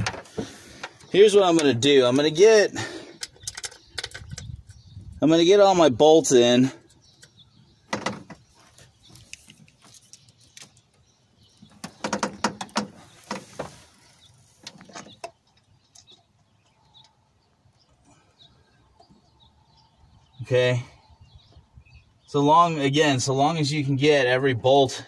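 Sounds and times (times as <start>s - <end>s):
metal bolts clicking and clinking: 3.2s - 4.8s.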